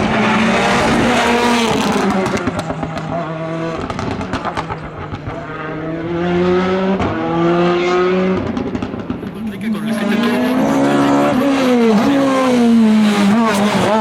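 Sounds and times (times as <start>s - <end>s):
race car engine revving: 0.0s - 14.0s
engine exhaust pops: 8.2s - 9.5s.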